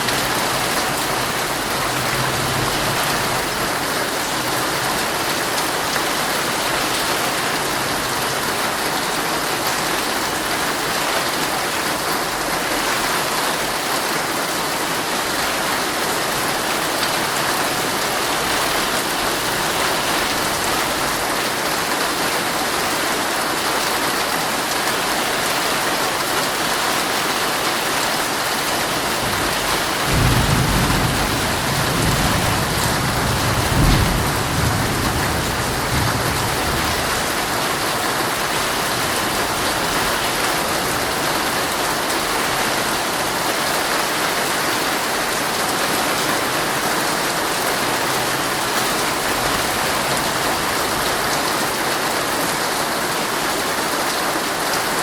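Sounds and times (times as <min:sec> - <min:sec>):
heavy rain on a tent: 0:00.0 - 0:55.0
low rumble of thunder: 0:29.3 - 0:37.5.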